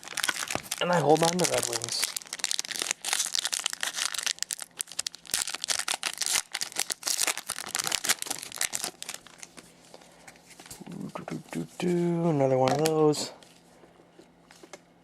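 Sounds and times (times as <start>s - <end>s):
wrapper crinkling and tearing: 0.0s - 9.6s.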